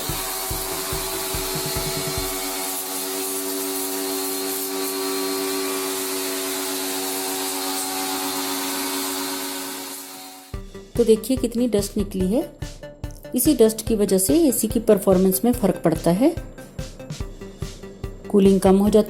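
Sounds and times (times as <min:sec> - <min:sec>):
pressure washer motor hum: 0:00.0 - 0:10.6.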